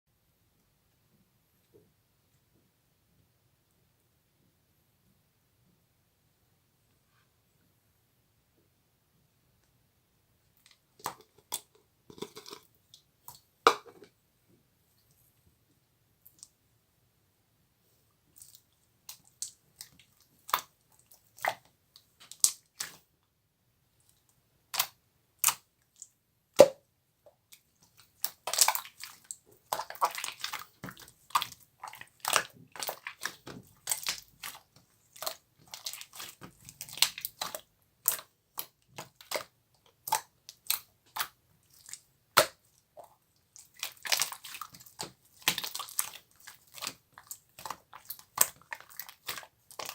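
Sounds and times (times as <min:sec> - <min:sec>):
slime squelching and popping: 0:18.4 - 0:23.0, 0:24.7 - 0:26.8, 0:27.5 - 0:49.9.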